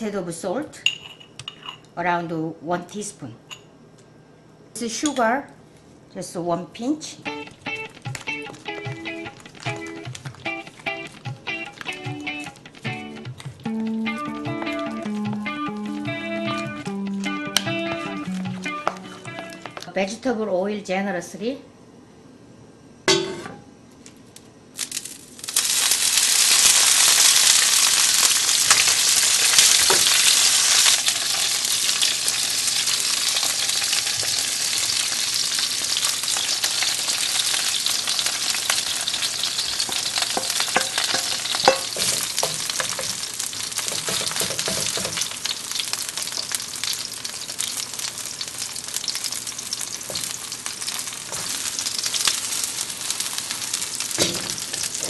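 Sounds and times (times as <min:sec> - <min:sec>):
pancake sizzling in oil: 0:24.8 - 0:55.0.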